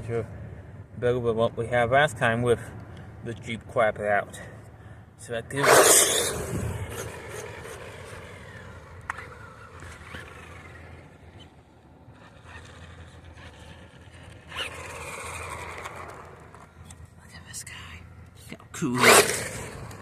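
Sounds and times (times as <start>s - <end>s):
toy car motor whine: 5.6s - 11.5s, 12.1s - 16.6s, 18.9s - 20.0s.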